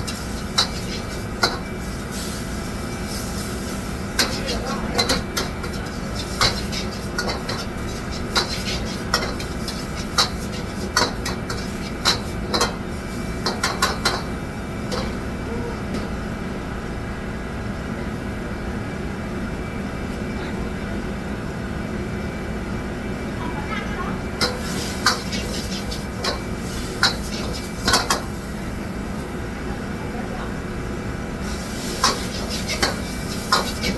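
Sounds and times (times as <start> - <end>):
steady background hum: 0.0 - 33.9
metal utensils clinking on dishes: 4.2 - 12.8, 32.0 - 33.9.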